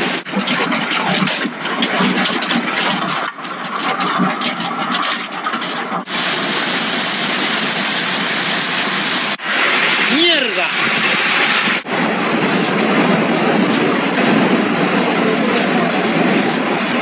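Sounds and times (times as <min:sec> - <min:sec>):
hail pelting down: 0:00.2 - 0:11.8
heavy rain: 0:06.1 - 0:11.9.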